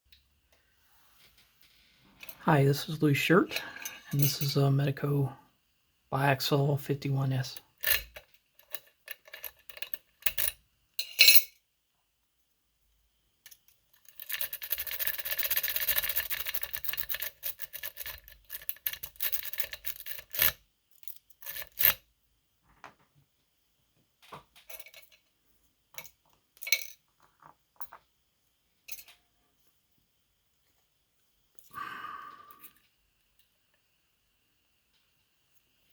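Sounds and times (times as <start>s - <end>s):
lock picks clicking and scraping: 7.8s - 11.5s, 13.5s - 22.0s.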